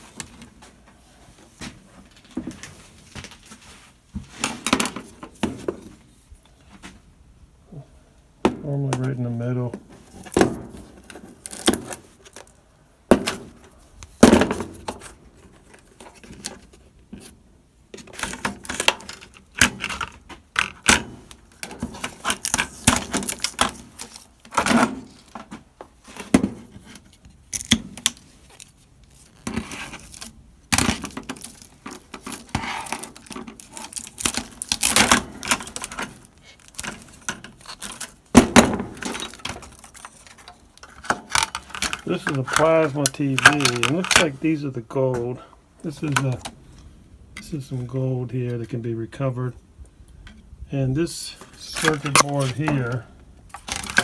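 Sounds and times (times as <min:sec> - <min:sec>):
wire cutters snipping wires: 0:51.8 - 0:52.8.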